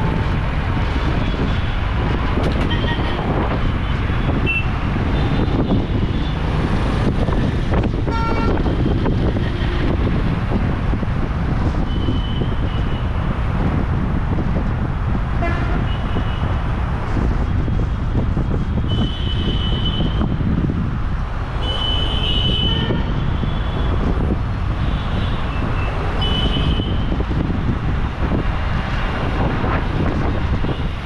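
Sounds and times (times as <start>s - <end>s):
road traffic: 0.0s - 31.0s
wind rumbling on microphone: 0.0s - 31.0s
vehicle horns tooting: 2.6s - 3.2s, 4.3s - 6.3s, 8.1s - 9.9s, 15.4s - 16.5s, 18.8s - 20.2s, 21.6s - 23.9s, 24.9s - 27.1s.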